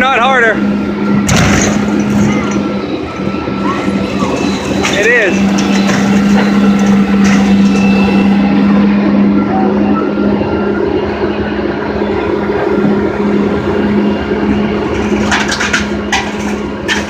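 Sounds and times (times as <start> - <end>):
heavy machine engine humming: 0.0 - 17.0
scrap metal clanking: 4.2 - 8.1, 14.9 - 17.0.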